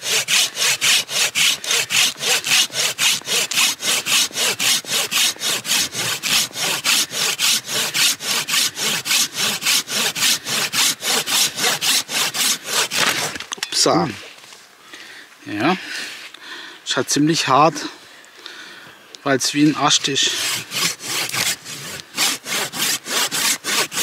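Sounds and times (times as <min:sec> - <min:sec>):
hand saw cutting wood: 0:00.0 - 0:13.4, 0:19.6 - 0:24.0.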